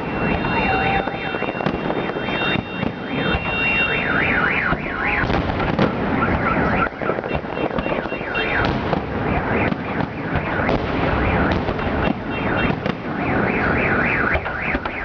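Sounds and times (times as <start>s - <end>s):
car alarm siren warbling: 0.0s - 15.0s
fireworks banging and crackling: 0.0s - 15.0s.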